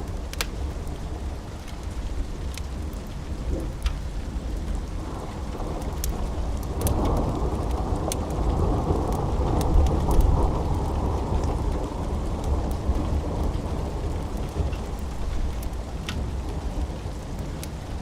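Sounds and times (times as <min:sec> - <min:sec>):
steady rain: 0:00.0 - 0:18.0
wood fire crackling: 0:00.0 - 0:18.0
rolling thunder: 0:04.6 - 0:18.0.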